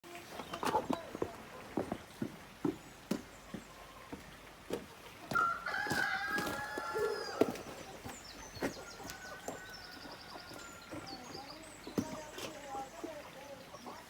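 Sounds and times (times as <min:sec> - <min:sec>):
rooster crowing: 0:05.3 - 0:07.6, 0:08.8 - 0:11.2.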